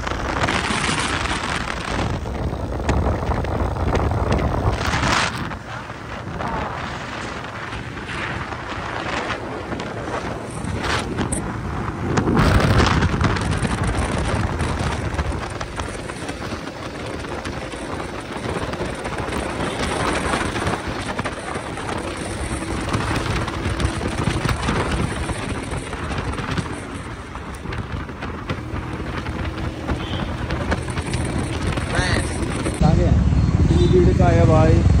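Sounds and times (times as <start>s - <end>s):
motorcycle road noise: 0.0s - 35.0s
wind on microphone: 0.0s - 35.0s.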